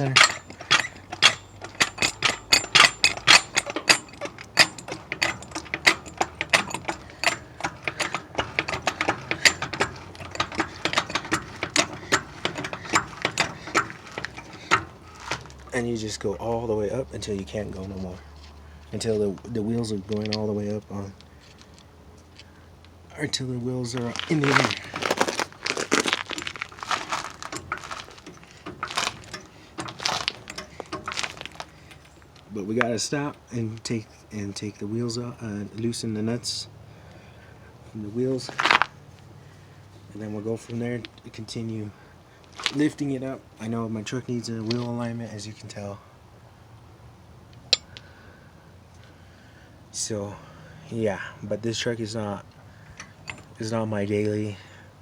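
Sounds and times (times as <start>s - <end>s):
jack clicking metallically: 0.0s - 15.9s, 23.9s - 33.9s, 52.9s - 53.7s.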